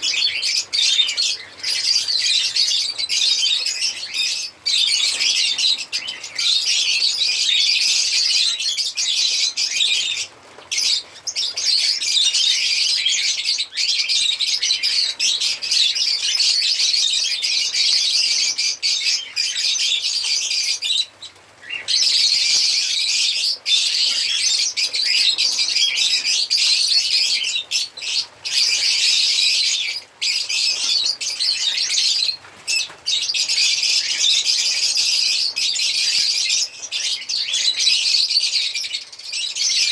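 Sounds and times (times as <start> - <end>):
lovebirds chirping: 0.0 - 39.9.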